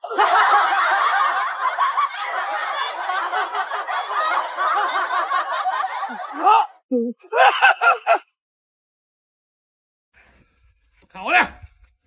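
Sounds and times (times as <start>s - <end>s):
people laughing together: 0.0s - 8.4s.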